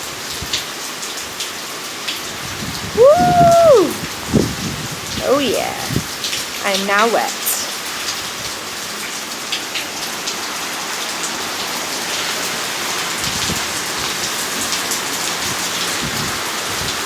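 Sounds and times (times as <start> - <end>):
heavy rain pouring: 0.0 - 17.0
wind rumbling on microphone: 2.4 - 6.2, 13.2 - 13.8, 15.4 - 17.0.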